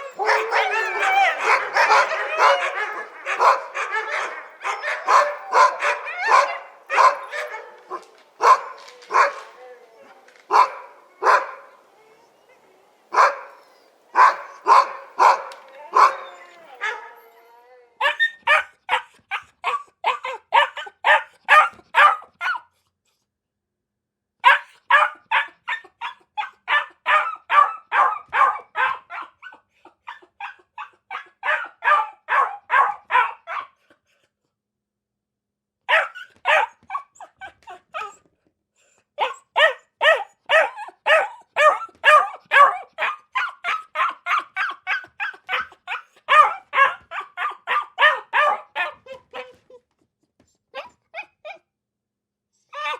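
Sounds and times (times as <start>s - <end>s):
dog barking rapidly: 0.0s - 9.5s, 10.5s - 11.8s, 13.2s - 13.6s, 14.2s - 17.0s, 18.0s - 22.6s, 24.4s - 29.6s, 30.4s - 33.8s, 35.9s - 37.0s, 39.2s - 49.0s.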